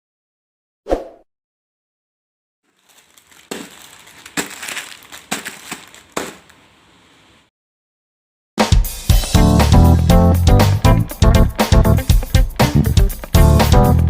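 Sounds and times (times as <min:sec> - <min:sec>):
plastic packets crinkling: 0:02.7 - 0:07.2.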